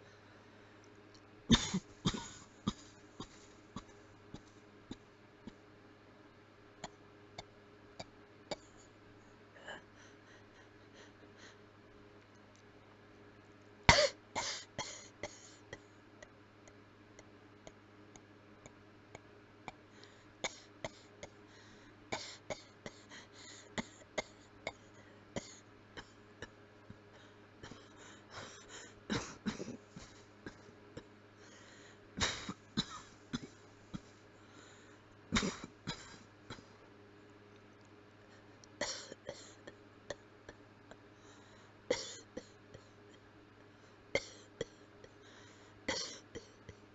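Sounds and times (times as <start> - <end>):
person coughing: 1.5 - 4.0, 13.9 - 15.6, 29.1 - 30.7, 32.2 - 34.2, 35.4 - 36.7, 38.8 - 40.2, 41.9 - 42.6, 45.9 - 46.6.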